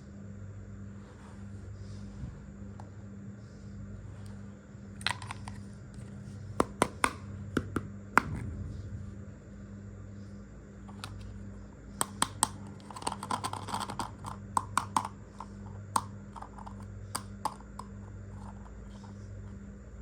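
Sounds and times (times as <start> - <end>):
toy kitchen pieces clicking: 5.1 - 5.6, 12.0 - 18.6.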